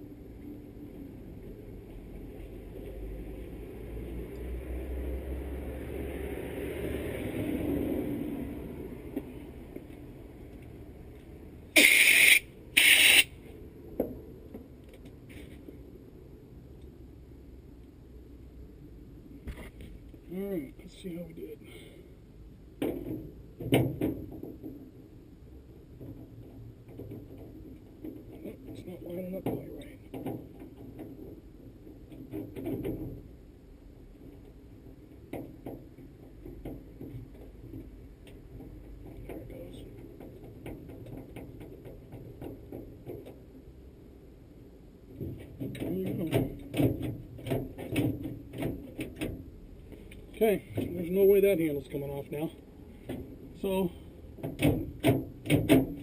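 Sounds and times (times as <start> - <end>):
shop tool rushing noise: 11.8 - 13.4.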